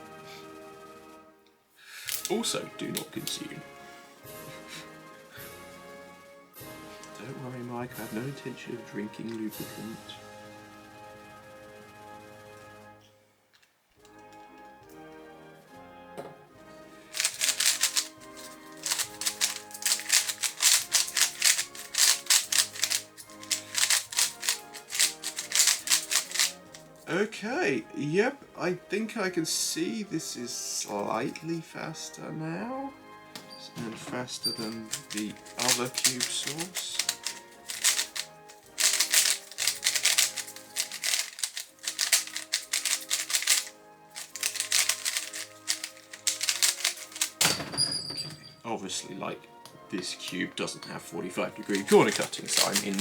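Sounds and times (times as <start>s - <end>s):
background music with held notes: 0.0s - 53.0s
plastic speed cube clacking: 2.1s - 3.4s, 17.1s - 27.1s, 34.5s - 47.6s, 51.7s - 53.0s.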